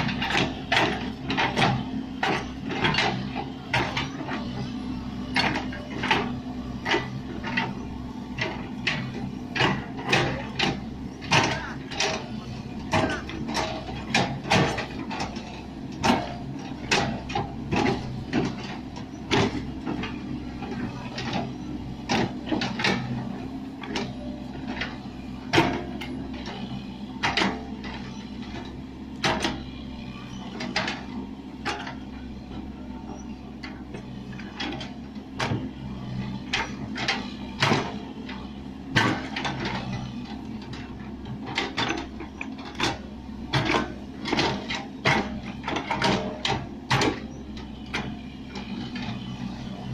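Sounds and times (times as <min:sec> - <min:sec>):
excavator engine running: 0:00.0 - 0:49.9
metal clanks and knocks: 0:36.5 - 0:47.3.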